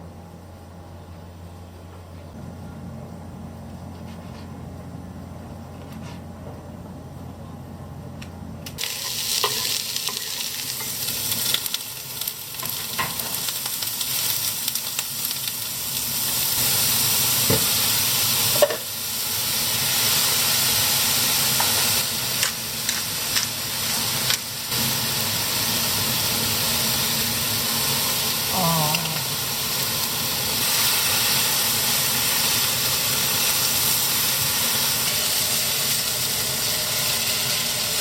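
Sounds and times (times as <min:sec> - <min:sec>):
food sizzling in a pan: 0:08.8 - 0:38.0.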